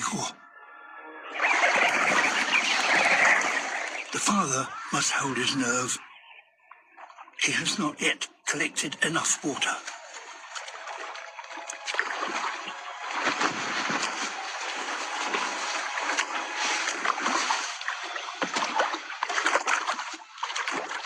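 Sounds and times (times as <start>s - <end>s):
birds splashing in water: 1.4s - 5.9s, 9.1s - 21.0s.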